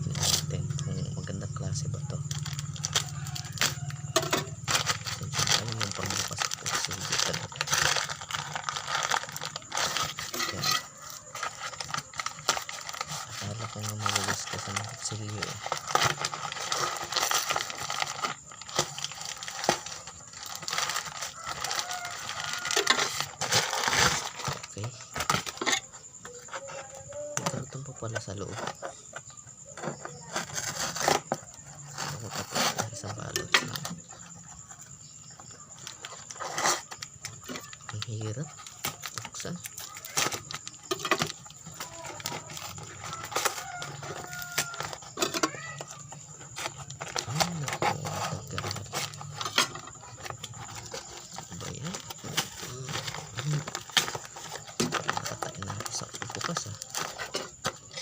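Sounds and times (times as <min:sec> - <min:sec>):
packaging crinkling and tearing: 0:02.2 - 0:25.8, 0:35.8 - 0:57.8.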